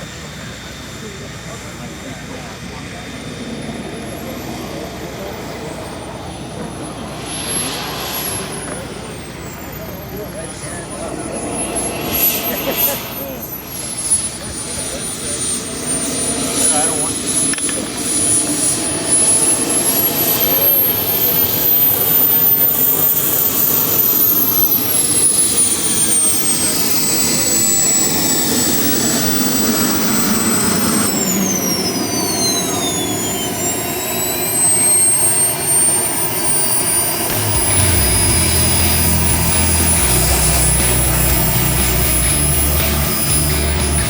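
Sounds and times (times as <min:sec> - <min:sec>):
model jet turbine whining: 0:00.0 - 0:44.0
low rumble: 0:03.2 - 0:14.3, 0:37.2 - 0:44.0.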